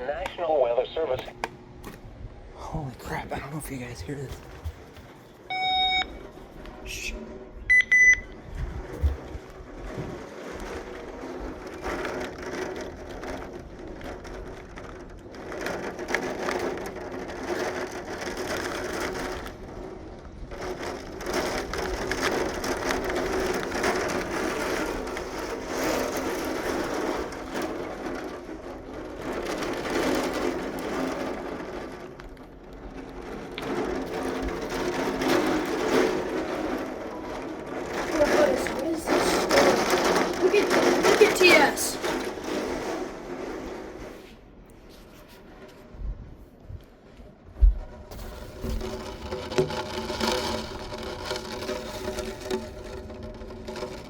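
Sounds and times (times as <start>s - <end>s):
heavy rain: 33.0s - 43.0s.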